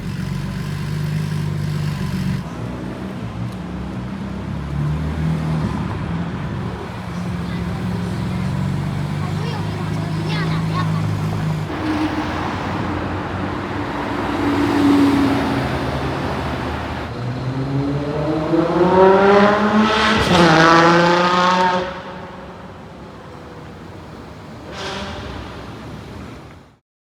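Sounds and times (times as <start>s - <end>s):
exhaust crack: 0.0s - 2.8s, 5.7s - 17.2s, 19.6s - 22.9s
sports car engine accelerating: 0.0s - 24.6s.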